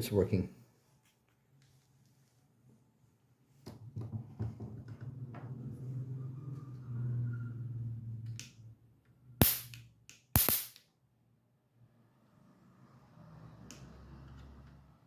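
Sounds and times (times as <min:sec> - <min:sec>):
electric racket spark snaps: 0:09.4 - 0:10.9.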